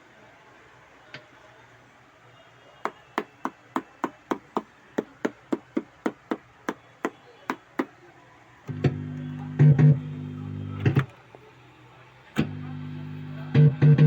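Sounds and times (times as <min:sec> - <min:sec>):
percussion pad taps: 0:02.9 - 0:07.9.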